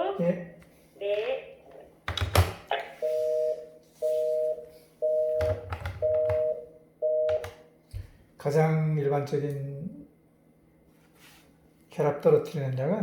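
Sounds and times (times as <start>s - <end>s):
telephone busy tone beeps: 3.0s - 7.4s.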